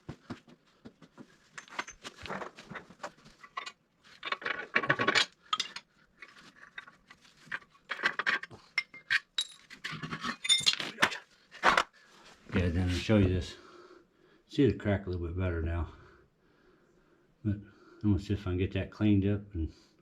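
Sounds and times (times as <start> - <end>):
metal tools clinking and clattering: 1.5 - 10.9.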